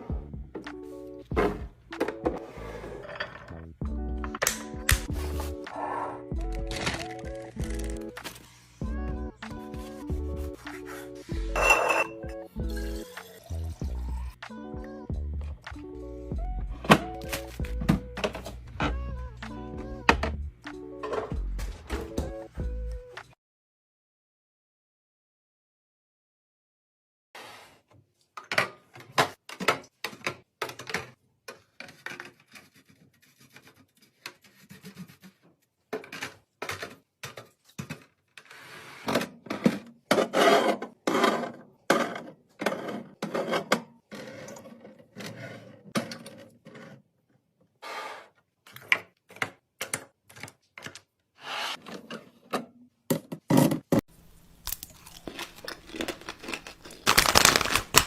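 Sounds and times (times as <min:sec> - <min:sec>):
plastic rustling: 0:54.6 - 0:58.0.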